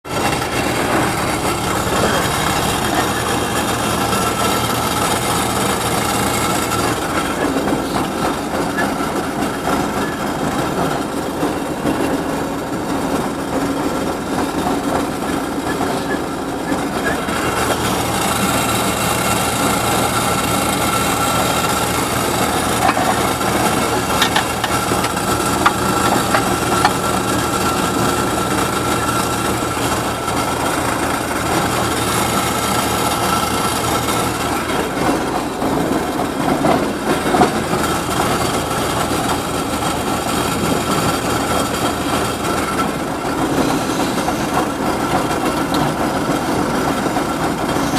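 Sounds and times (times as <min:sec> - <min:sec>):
heavy diesel engines under load: 0:00.0 - 0:47.9
metal clanks: 0:21.5 - 0:27.3.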